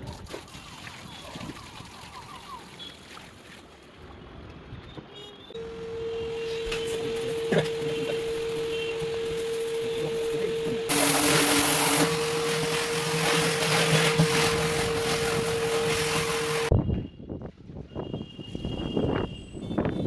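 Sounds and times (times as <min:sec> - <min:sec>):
small motor humming: 0:05.6 - 0:16.7.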